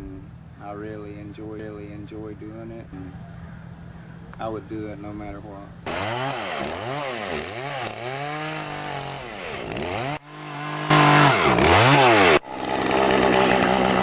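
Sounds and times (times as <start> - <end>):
chainsaw carving wood: 5.8 - 14.0.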